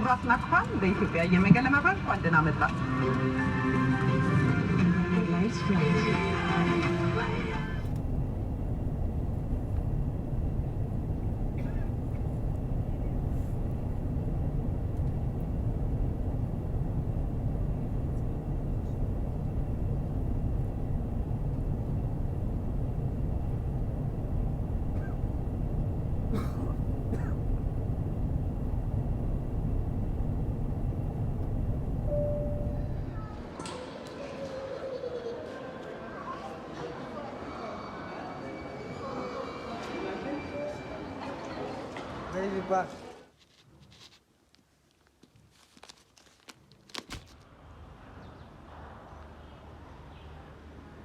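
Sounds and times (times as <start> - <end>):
jet engine cabin rumble: 5.9 - 33.5.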